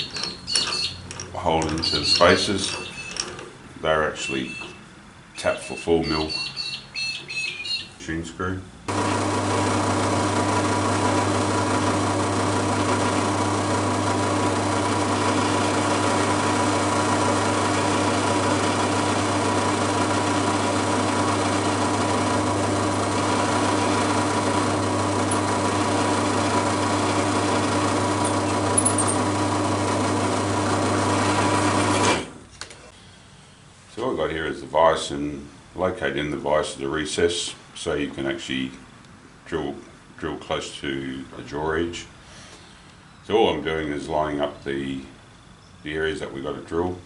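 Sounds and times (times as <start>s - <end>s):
bench drill motor whining: 0.0s - 3.5s, 8.9s - 32.4s.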